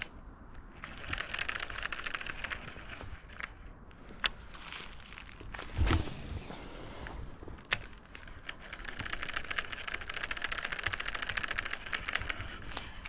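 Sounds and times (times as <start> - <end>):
dull thump: 5.8 - 6.6
sharp clicks: 7.0 - 13.0
fishing reel ticking: 8.0 - 13.0.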